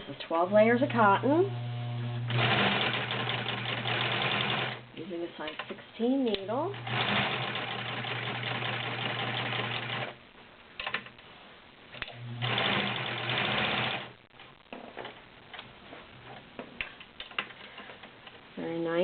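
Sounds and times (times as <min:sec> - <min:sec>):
sewing machine stitching: 0:02.2 - 0:04.8, 0:06.8 - 0:10.1, 0:12.4 - 0:14.1.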